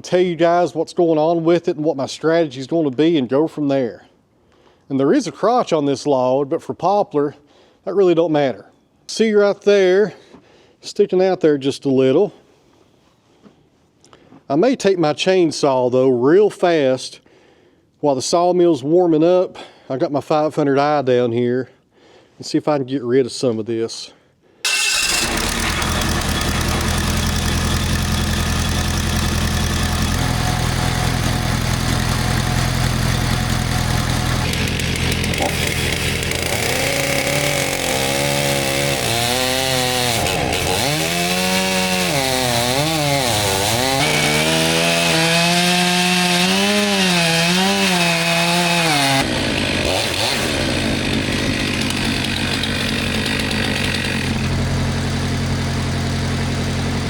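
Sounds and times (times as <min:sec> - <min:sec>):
chainsaw cutting wood: 0:24.7 - 0:57.0
sawmill engine running: 0:24.7 - 0:57.0.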